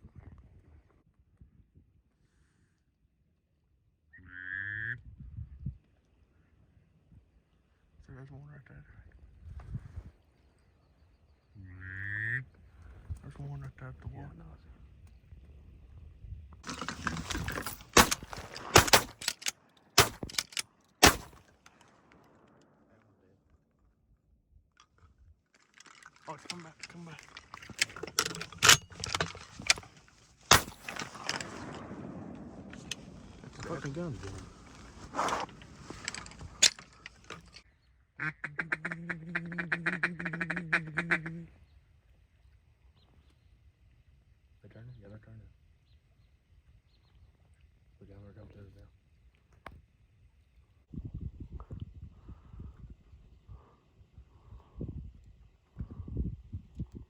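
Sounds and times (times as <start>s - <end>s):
loud shotgun shots: 17.2s - 21.4s, 30.5s - 33.8s
rustling noise: 32.6s - 37.6s
duck call quacking: 38.2s - 41.5s.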